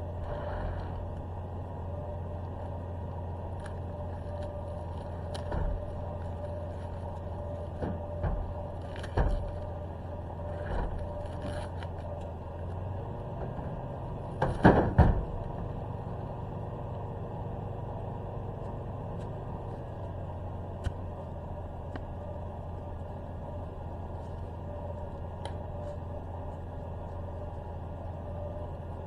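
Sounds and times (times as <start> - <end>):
vehicle engine idling: 0.0 - 29.0
knocks and thumps: 5.1 - 9.8, 13.4 - 15.7.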